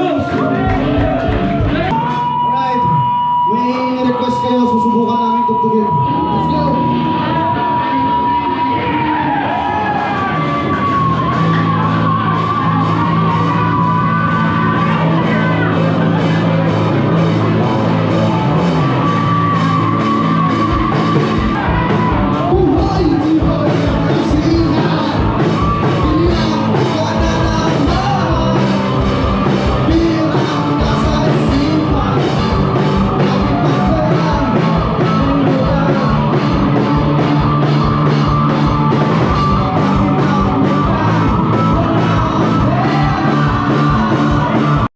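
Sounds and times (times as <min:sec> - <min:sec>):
rock band playing live: 0:00.0 - 0:44.9
person singing: 0:05.5 - 0:44.9.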